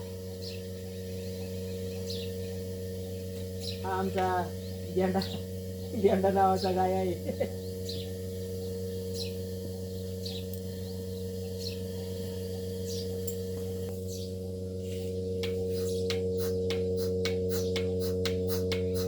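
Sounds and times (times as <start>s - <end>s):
high chirp of milking machine: 0.0s - 19.0s
milking machine humming: 15.4s - 19.0s.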